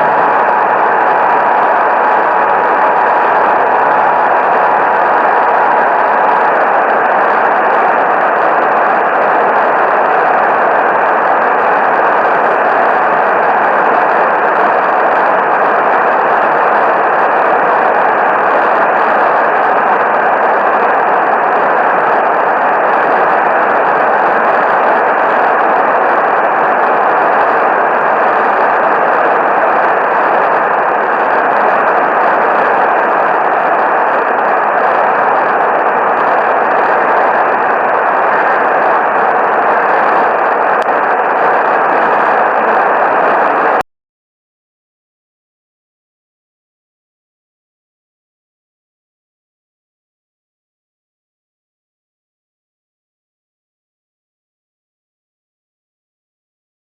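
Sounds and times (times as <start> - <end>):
radio static hiss: 0.0 - 43.8.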